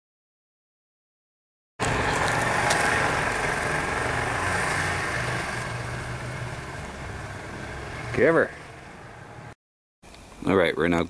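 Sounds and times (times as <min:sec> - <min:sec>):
vehicle engine idling: 0:01.8 - 0:09.5.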